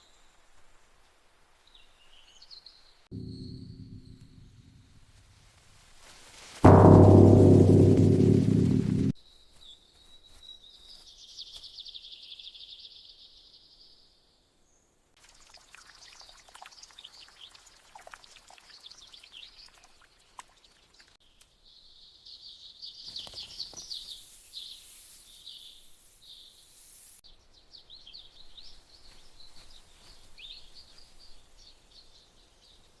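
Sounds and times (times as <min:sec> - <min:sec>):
small birds chirping and trilling: 0:09.3 - 0:14.8, 0:15.9 - 0:26.7.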